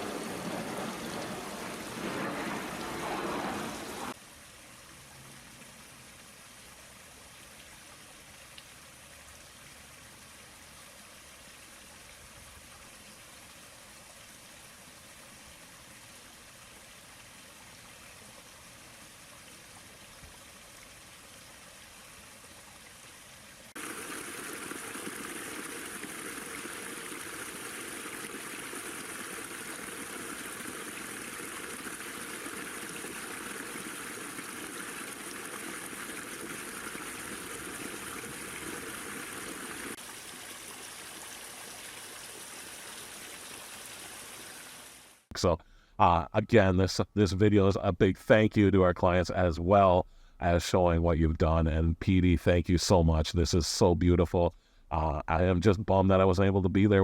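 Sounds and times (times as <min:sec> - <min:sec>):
water trickling over rocks: 0:04.1 - 0:45.3.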